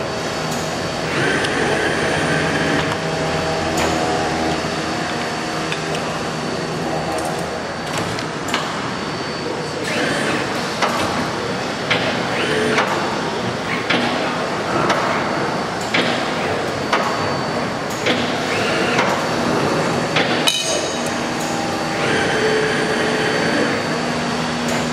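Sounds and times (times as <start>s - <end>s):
tube-bending machine running: 0.0s - 24.9s
motor whines: 0.6s - 6.8s, 9.4s - 10.7s, 12.2s - 14.5s, 16.3s - 20.1s, 21.1s - 24.9s.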